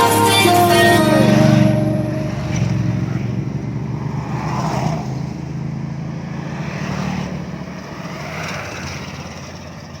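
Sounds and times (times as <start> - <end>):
vehicle engine running: 0.0 - 4.5
rushing air or passing traffic: 0.0 - 10.0.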